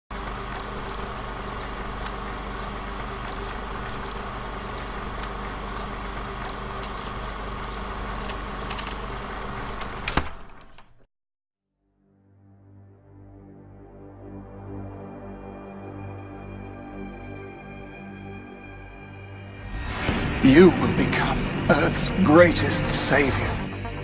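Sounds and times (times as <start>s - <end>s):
mechanical rumble with hum: 0.1s - 11.0s.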